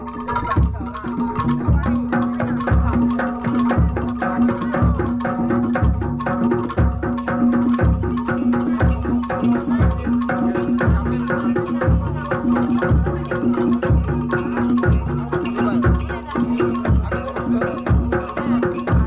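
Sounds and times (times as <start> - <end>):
deep drum beat: 0.1 - 19.0.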